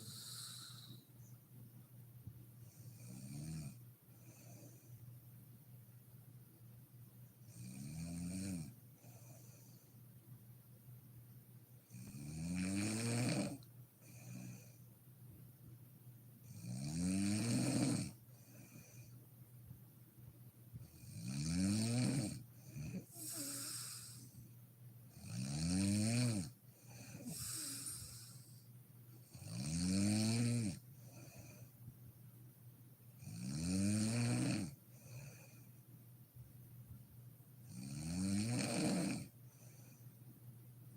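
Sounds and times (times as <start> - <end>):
woman snoring loudly: 12.0 - 13.6, 16.6 - 18.2, 21.0 - 24.2, 25.2 - 26.5, 27.1 - 28.4, 29.3 - 30.8, 33.2 - 34.8, 37.7 - 39.3
faint breath out: 22.7 - 24.5, 26.8 - 28.8.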